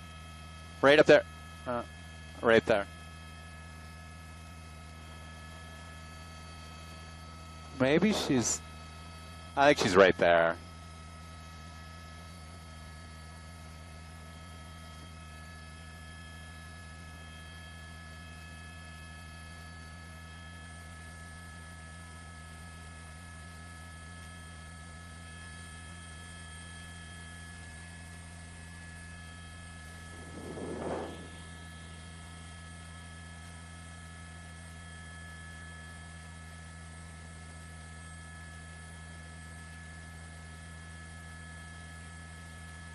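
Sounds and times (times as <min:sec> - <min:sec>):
low electrical hum: 0:00.0 - 0:12.4, 0:27.8 - 0:32.4
brief burst of louder noise: 0:30.0 - 0:31.6.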